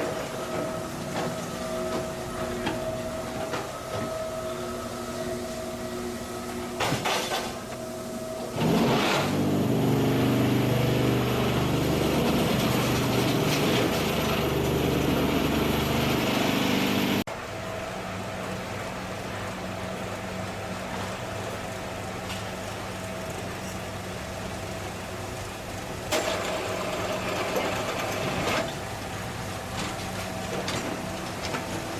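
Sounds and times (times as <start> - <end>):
machine hum: 0.0 - 28.2
loud low vibrating hum: 4.3 - 25.7.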